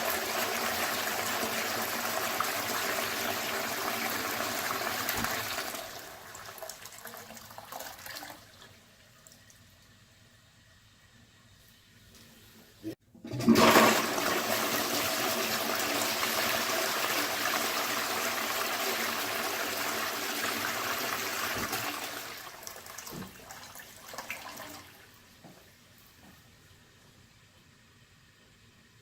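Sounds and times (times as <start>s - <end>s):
toilet water rushing: 0.0s - 8.8s, 13.2s - 25.2s
toilet gurgles: 0.0s - 9.7s, 12.8s - 25.2s.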